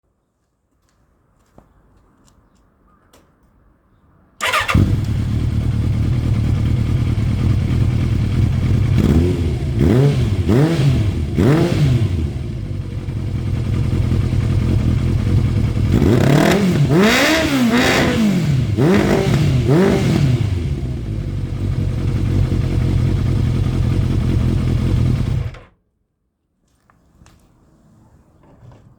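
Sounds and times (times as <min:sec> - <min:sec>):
engine revving: 0:04.4 - 0:25.7
motorcycle engine starting and idling: 0:04.4 - 0:25.8.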